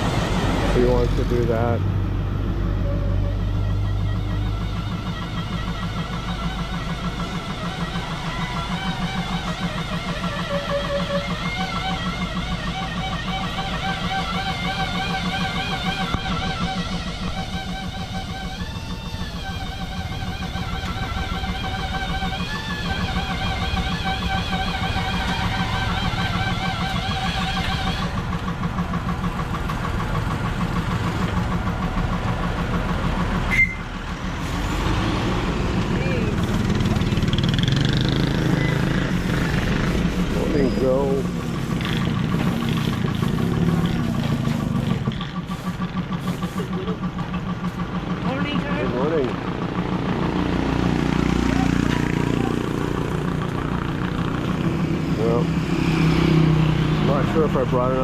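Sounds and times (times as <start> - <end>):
wavering music: 0.0 - 29.2
low repeating pulse: 0.0 - 33.5
small engine idling: 0.0 - 58.0.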